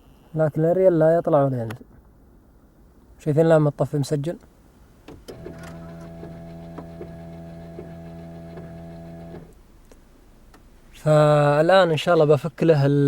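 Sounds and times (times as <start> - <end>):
antenna motor humming: 5.3 - 9.6.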